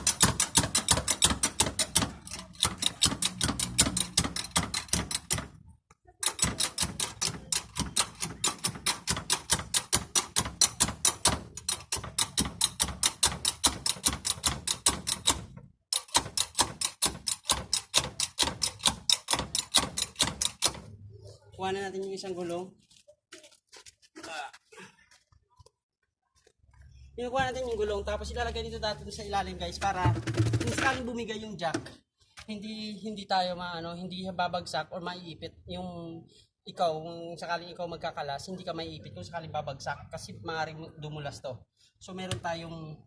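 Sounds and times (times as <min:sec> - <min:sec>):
car jack clicking: 0:00.0 - 0:05.6, 0:06.2 - 0:20.9.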